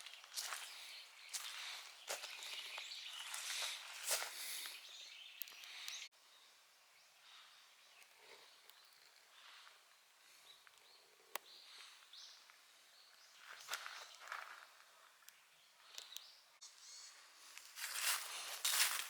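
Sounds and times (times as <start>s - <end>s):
distant bird calls: 0.0s - 17.4s.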